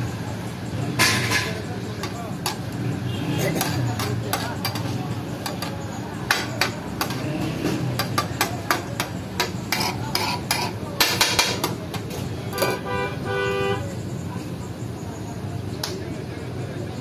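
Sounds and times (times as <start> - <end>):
metal utensils clinking on dishes: 1.0 - 2.7, 3.4 - 12.8
vehicle horn: 3.0 - 3.6, 12.6 - 13.9.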